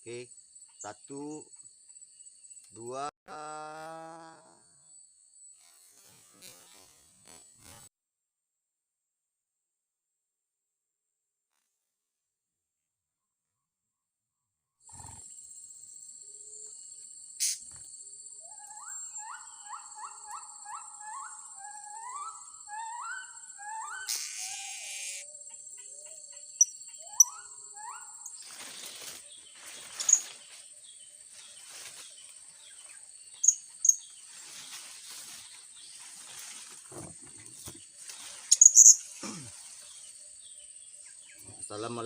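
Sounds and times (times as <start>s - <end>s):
high-pitched insect buzz: 3.6s - 7.9s, 14.9s - 21.5s, 22.2s - 40.6s
rustling: 34.2s - 39.9s
sharp high chirps: 38.5s - 39.1s.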